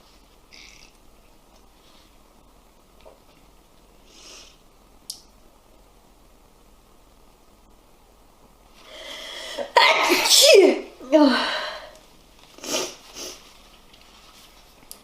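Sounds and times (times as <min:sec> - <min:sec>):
person sneezing: 0:09.4 - 0:11.9.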